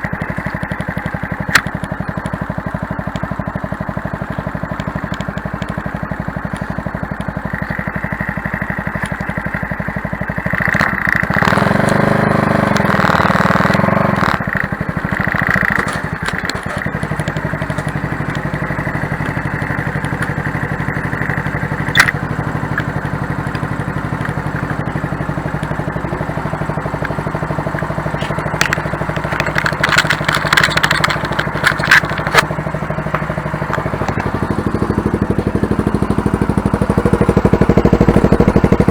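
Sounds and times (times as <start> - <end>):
motorcycle engine idling: 0.0 - 38.9
crackling clicks: 0.2 - 3.4, 4.2 - 7.9, 8.9 - 9.5, 10.5 - 38.9
sharp click: 21.9 - 22.9.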